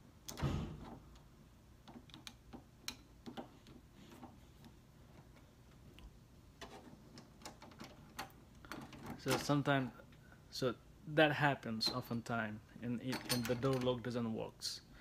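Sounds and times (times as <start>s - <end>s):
door knob parts clicking and tapping: 0.3s - 4.3s.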